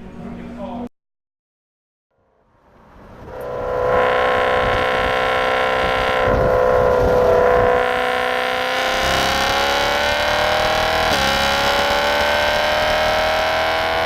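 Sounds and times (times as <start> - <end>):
car engine running hard: 3.2 - 14.0.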